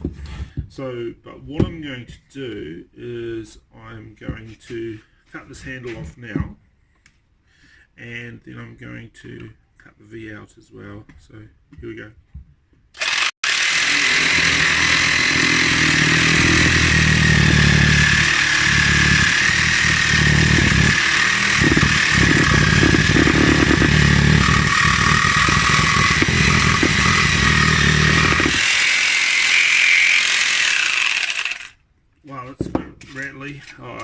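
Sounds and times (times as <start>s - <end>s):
jigsaw cutting wood rattling: 13.0s - 31.8s
jigsaw motor whining: 13.0s - 31.8s.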